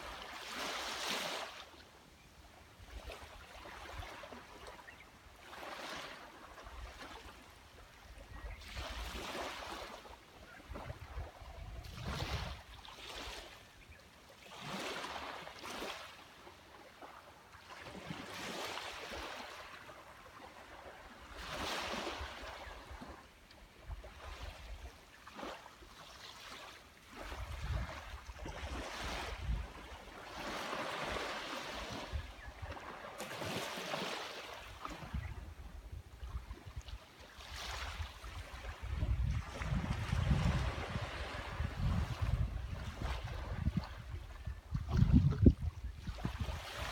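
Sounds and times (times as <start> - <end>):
sea waves breaking on beach: 0.0 - 1.7, 8.6 - 10.2, 14.4 - 23.3, 24.1 - 35.3, 36.3 - 44.2, 46.1 - 46.9
wind rumble on microphone: 10.5 - 12.8, 27.2 - 30.0, 34.9 - 37.0, 37.7 - 46.9.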